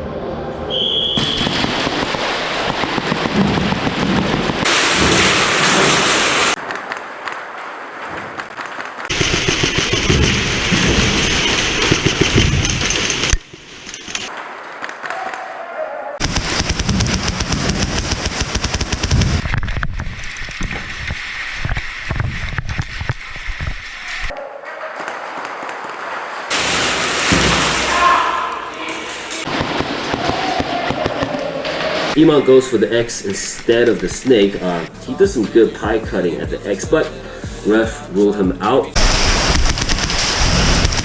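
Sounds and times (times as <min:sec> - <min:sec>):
airsoft guns firing bursts: 0:09.1 - 0:10.7.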